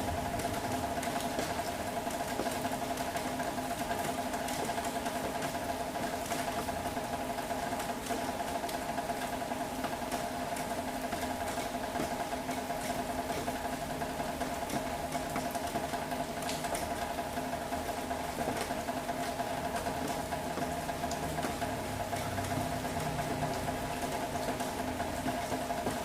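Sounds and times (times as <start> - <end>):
steady mechanical hum: 0.0 - 26.0
rain falling: 18.2 - 26.0.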